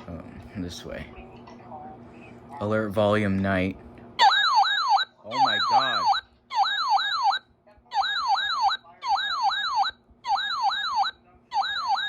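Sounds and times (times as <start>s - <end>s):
fast warbling siren: 4.2s - 12.0s.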